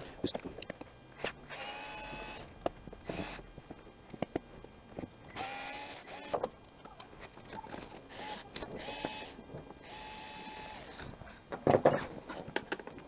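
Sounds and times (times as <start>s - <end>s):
cordless screwdriver whirring: 1.2s - 3.4s, 5.3s - 6.4s, 8.1s - 11.1s.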